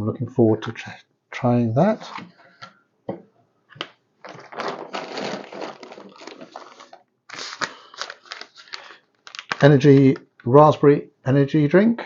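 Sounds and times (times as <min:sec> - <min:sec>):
plastic packaging crinkling: 0:03.8 - 0:10.5.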